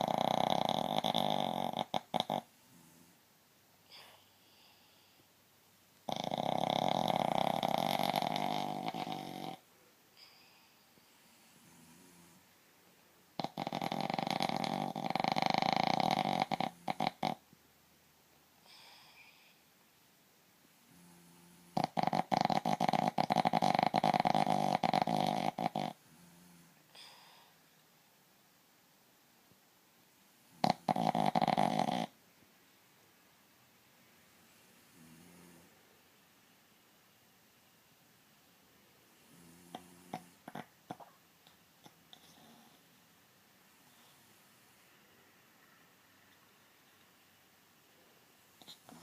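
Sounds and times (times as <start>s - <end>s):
person snoring: 0.0s - 3.2s, 6.1s - 9.6s, 13.4s - 17.4s, 20.9s - 27.5s, 30.5s - 32.2s
soft breaths: 2.4s - 5.8s, 8.2s - 13.4s, 18.6s - 20.0s, 25.9s - 28.1s, 38.7s - 49.0s.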